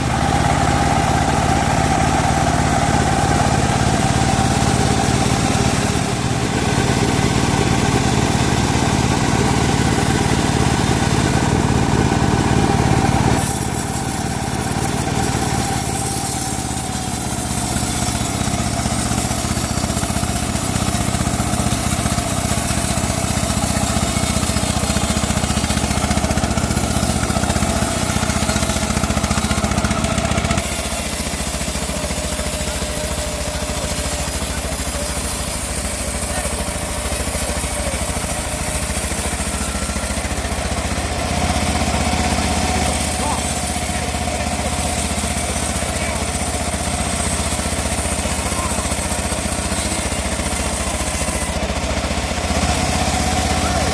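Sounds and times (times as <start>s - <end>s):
bandsaw mill sawing wood: 0.0s - 53.9s.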